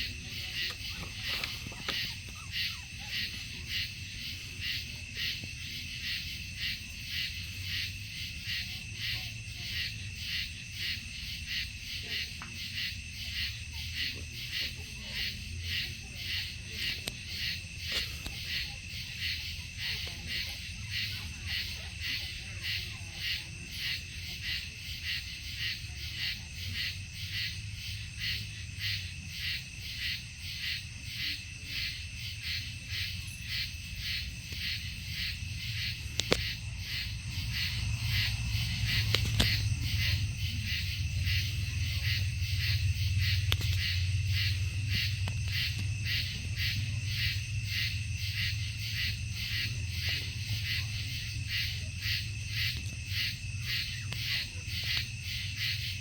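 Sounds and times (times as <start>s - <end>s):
night insects chirping: 0.0s - 56.0s
faint clicks: 36.1s - 36.5s, 43.4s - 44.0s, 45.0s - 46.0s.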